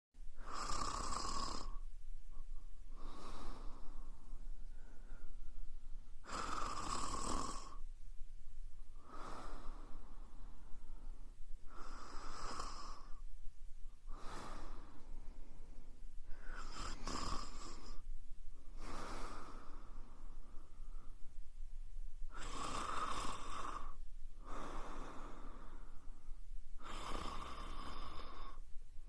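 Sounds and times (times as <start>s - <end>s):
woman snoring: 0.4s - 1.8s, 6.2s - 7.8s, 11.7s - 13.2s, 16.3s - 18.0s, 22.3s - 26.0s, 26.8s - 28.6s.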